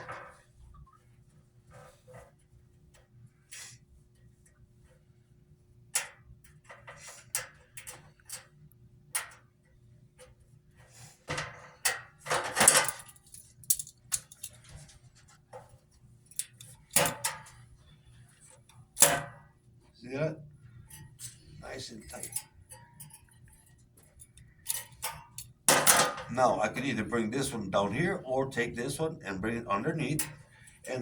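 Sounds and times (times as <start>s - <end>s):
wire twisting with metallic clicks: 12.7s - 14.9s, 24.3s - 26.0s.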